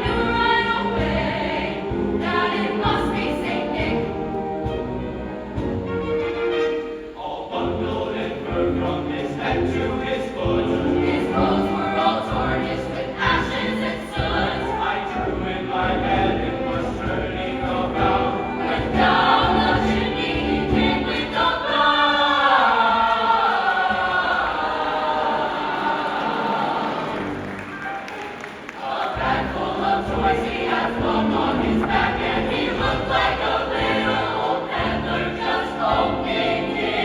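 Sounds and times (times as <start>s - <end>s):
choir singing: 0.0s - 37.0s
musical backing: 0.0s - 37.0s.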